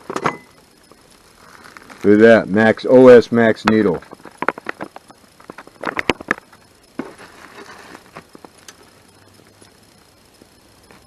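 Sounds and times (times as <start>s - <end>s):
rustling: 0.0s - 2.4s, 3.8s - 11.0s
small hard parts clicking: 3.6s - 11.0s.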